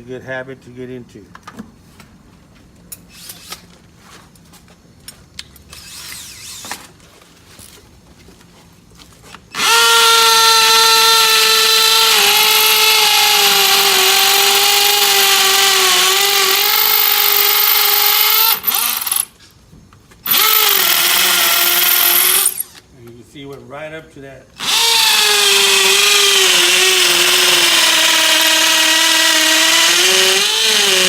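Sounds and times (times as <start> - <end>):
power drill boring into wall: 9.5 - 19.3, 20.2 - 22.8, 24.6 - 31.0.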